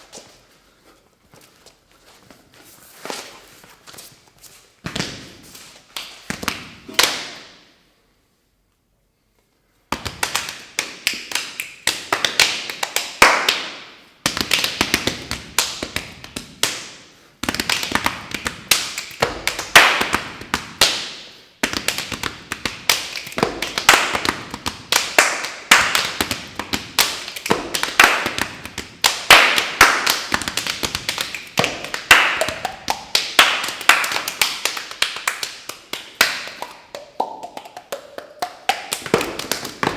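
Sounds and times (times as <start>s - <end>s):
body percussion tapping: 17.4s - 39.9s.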